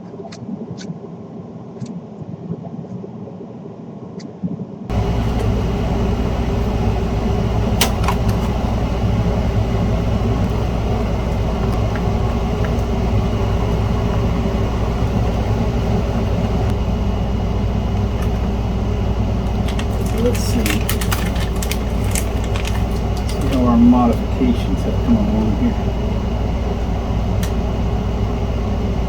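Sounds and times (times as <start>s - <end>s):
electric motor drone: 4.9s - 29.0s.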